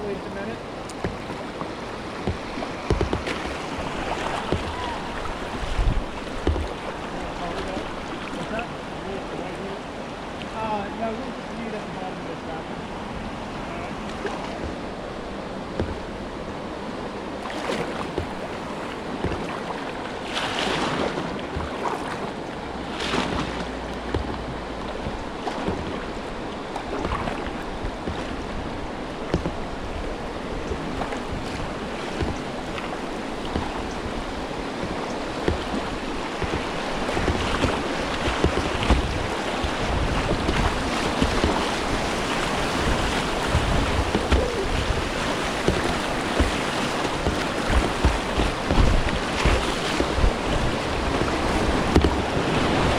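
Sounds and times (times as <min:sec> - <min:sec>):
wind buffeting microphone: 0:00.0 - 0:09.1, 0:22.6 - 0:52.9
water splashes: 0:00.0 - 0:52.9
whitewater rapids rushing: 0:00.0 - 0:52.9.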